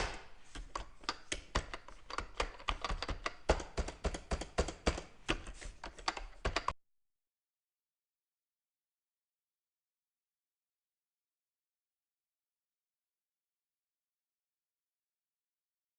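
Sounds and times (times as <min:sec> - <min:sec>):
computer keyboard key clicks: 0:00.6 - 0:06.8.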